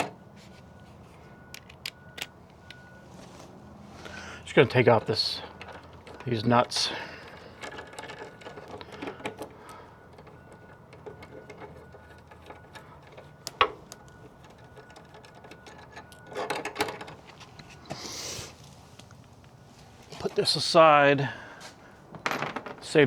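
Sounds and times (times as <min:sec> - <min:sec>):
metallic clicks of nuts unscrewing: 0:04.8 - 0:17.8.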